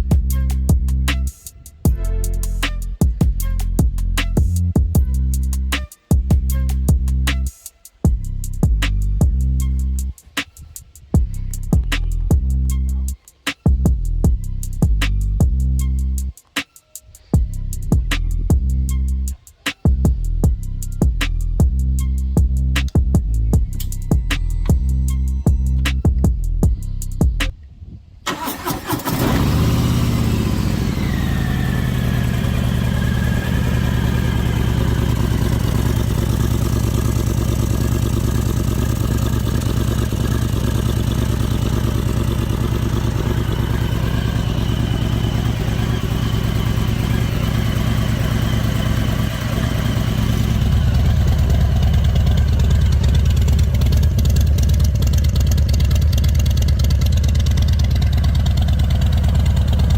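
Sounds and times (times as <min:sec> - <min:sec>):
motorcycle engine starting and idling: 0:28.3 - 0:59.9.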